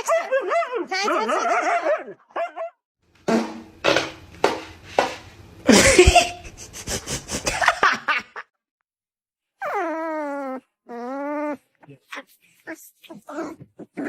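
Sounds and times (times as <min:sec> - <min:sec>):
person laughing: 0:05.7 - 0:08.5.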